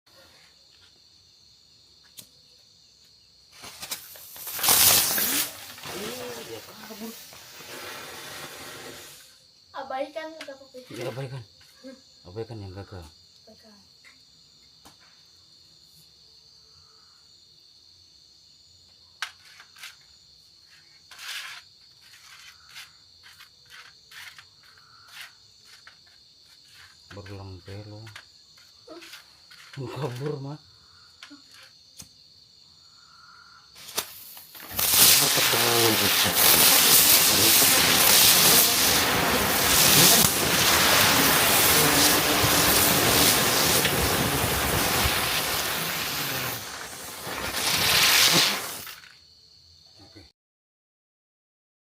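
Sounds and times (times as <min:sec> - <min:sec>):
crickets chirping: 0:00.1 - 0:50.3
hissing burst: 0:03.5 - 0:09.4, 0:33.8 - 0:49.1
sharp cracks: 0:03.6 - 0:08.1, 0:33.8 - 0:49.2.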